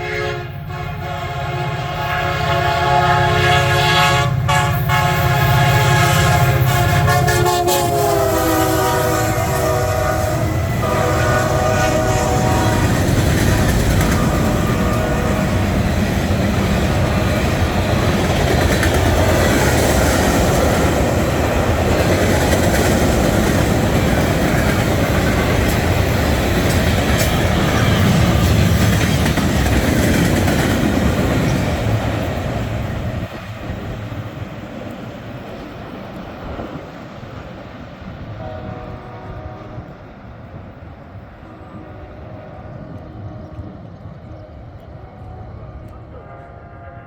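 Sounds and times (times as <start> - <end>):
train horn blast: 0.0 - 18.1, 18.9 - 19.7, 38.4 - 40.2, 41.4 - 47.0
freight train rumbling past: 0.0 - 47.0
wheels clacking over rail joints: 12.3 - 38.2.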